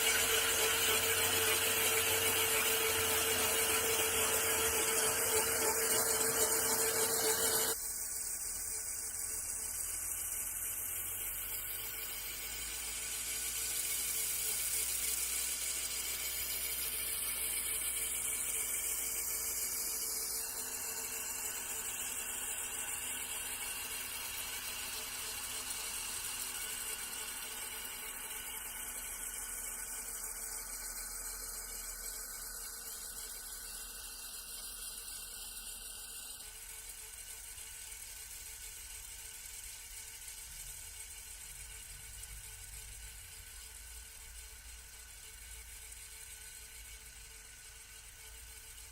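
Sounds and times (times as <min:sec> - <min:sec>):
electric cultivator motor whine: 0:00.0 - 0:38.8.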